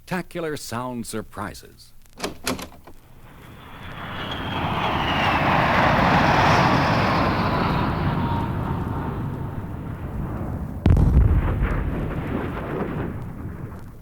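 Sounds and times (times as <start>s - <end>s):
aircraft flying past: 3.1s - 10.8s.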